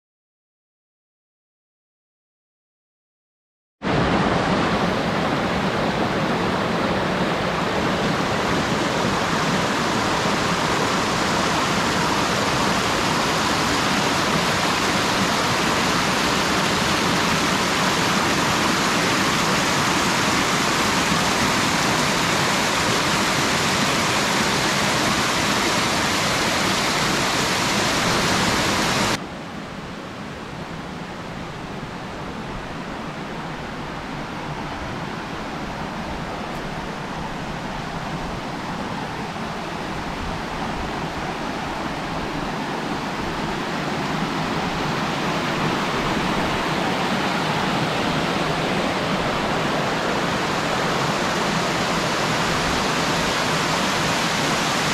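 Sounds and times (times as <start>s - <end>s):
water rushing over rocks: 3.8s - 29.2s, 32.0s - 54.9s.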